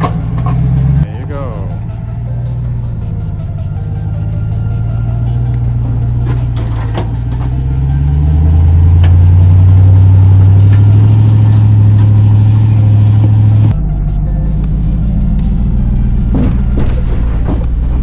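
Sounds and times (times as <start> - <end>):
truck engine under load: 0.0 - 18.0
sharp knocks: 16.3 - 18.0.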